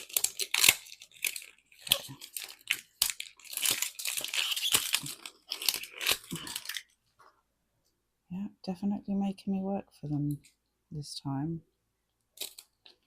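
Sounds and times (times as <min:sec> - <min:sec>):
plastic wrapping crinkling and tearing: 0:00.0 - 0:07.0, 0:12.4 - 0:13.0.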